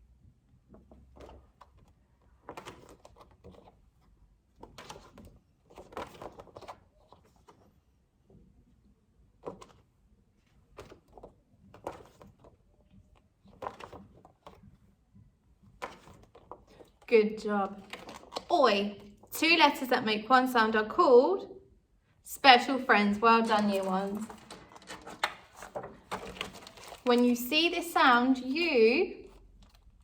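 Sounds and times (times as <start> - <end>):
handling noise clicks and rustles: 17.7 - 18.5, 23.4 - 27.8.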